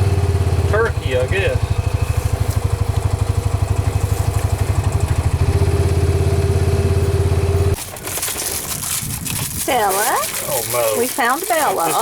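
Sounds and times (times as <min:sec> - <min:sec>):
vehicle engine idling: 0:00.0 - 0:08.6.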